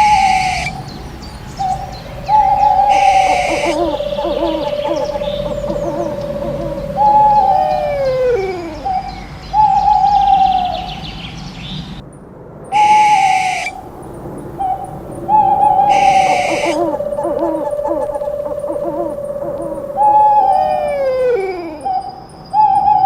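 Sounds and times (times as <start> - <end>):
owl hooting: 0.0 - 10.2, 12.8 - 22.0
steady wavering tone: 0.8 - 9.0, 13.8 - 21.9.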